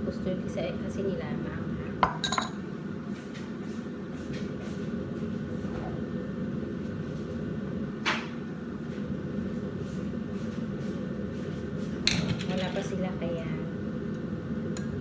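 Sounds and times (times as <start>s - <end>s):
kitchen appliance humming: 4.9s - 15.0s.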